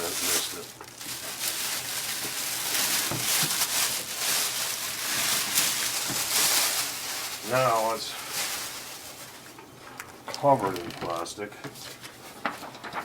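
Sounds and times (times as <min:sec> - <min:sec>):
packing material crinkling: 0:00.0 - 0:09.6.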